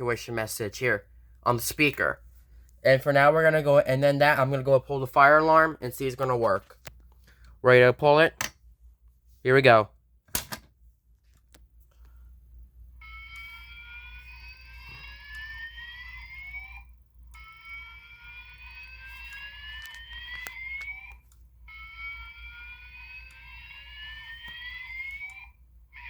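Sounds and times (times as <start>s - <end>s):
fire alarm slow-whoop tone: 13.0s - 26.0s.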